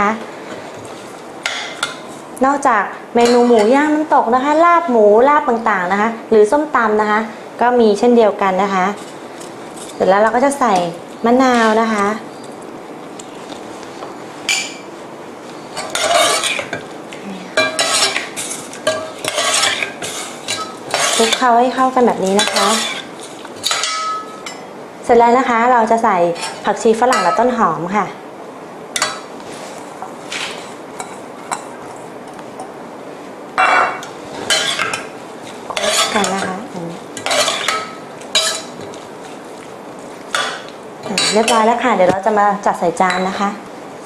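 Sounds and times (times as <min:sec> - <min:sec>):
utensil scraping in a pot: 0:08.6 - 0:10.2, 0:15.6 - 0:16.8, 0:17.6 - 0:24.0, 0:34.3 - 0:39.5.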